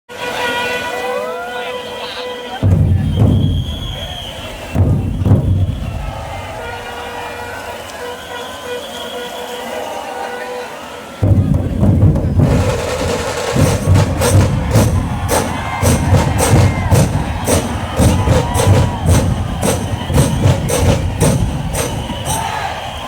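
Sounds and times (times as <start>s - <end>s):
big drums beating low rhythm: 2.6s - 7.0s, 11.2s - 23.0s
sharp cracking drum strokes: 11.2s - 23.0s.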